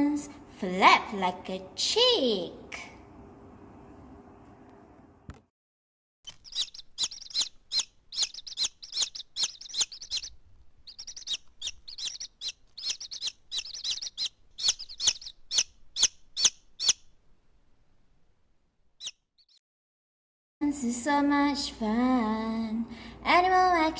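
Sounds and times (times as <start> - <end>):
chicks peeping: 6.3 - 17.0.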